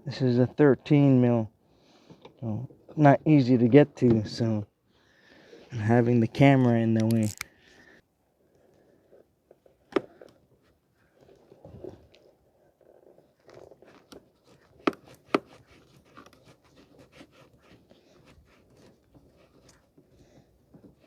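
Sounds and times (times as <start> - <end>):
tools and metal parts handled: 7.0 - 7.5.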